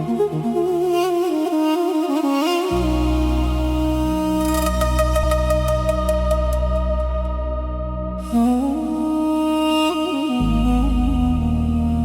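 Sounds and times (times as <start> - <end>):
low sustained drone: 2.7 - 12.0.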